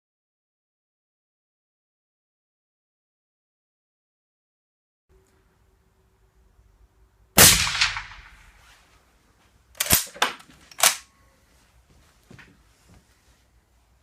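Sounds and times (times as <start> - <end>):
suppressed rifle shot: 7.4 - 8.6
rifle bolt clacks: 9.8 - 11.1.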